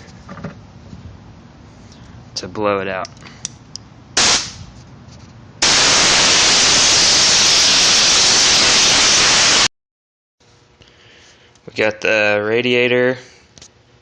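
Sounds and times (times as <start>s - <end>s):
compressed air blow gun hissing: 5.6s - 9.7s.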